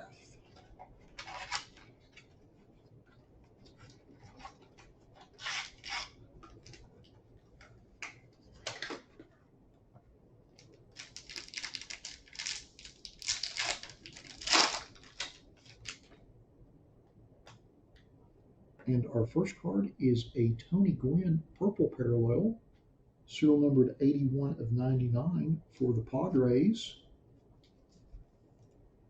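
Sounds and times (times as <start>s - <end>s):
plastic wrap crinkling and tearing: 0.4s - 2.4s, 3.8s - 6.9s, 10.6s - 16.2s.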